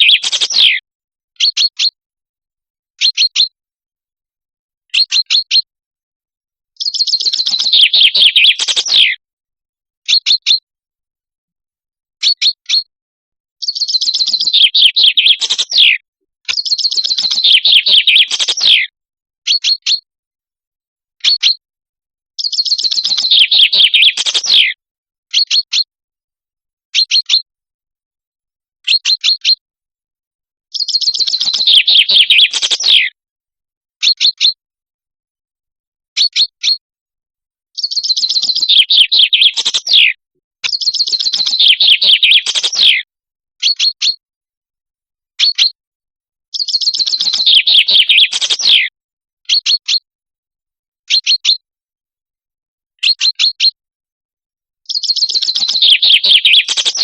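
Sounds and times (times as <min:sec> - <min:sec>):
chaffinch song trills: 0:16.6 - 0:18.8.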